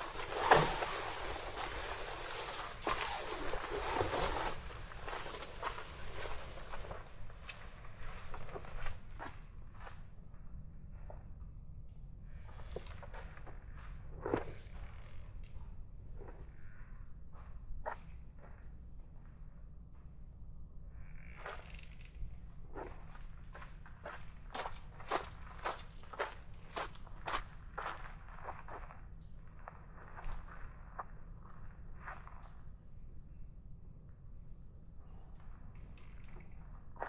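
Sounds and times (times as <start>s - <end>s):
insects shrilling: 0.0s - 9.0s.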